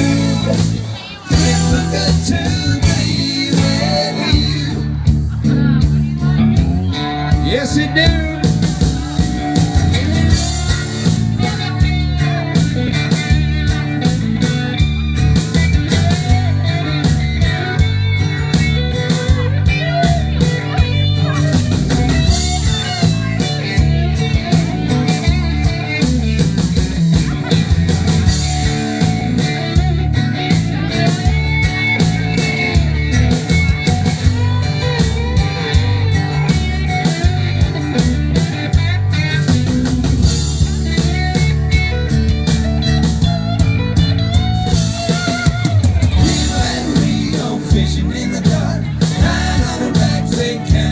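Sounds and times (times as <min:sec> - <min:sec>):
bass: 0:00.0 - 0:50.9
lead guitar: 0:00.0 - 0:50.9
steady drum beat: 0:00.0 - 0:50.9.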